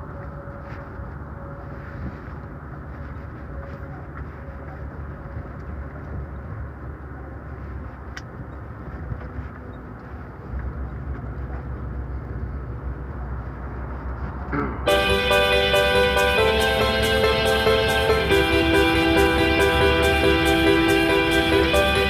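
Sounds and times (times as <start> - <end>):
vehicle road and engine rumble: 0.0 - 14.9
background music: 14.9 - 22.0.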